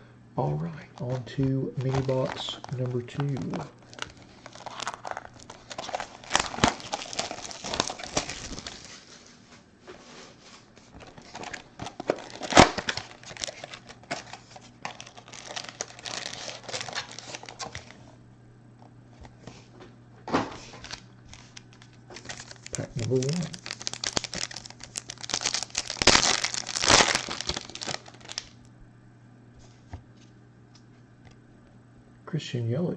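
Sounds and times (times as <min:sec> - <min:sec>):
foil wrappers crinkling and tearing: 0:01.0 - 0:09.3, 0:10.9 - 0:18.1, 0:20.4 - 0:28.6.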